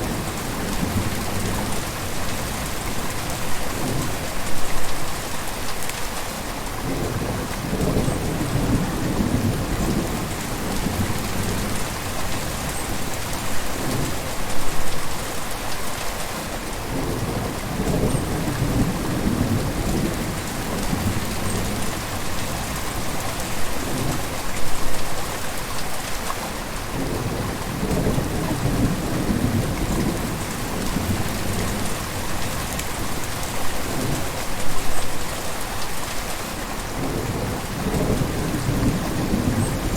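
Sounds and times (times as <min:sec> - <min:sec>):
river water flowing: 0:20.2 - 0:37.0.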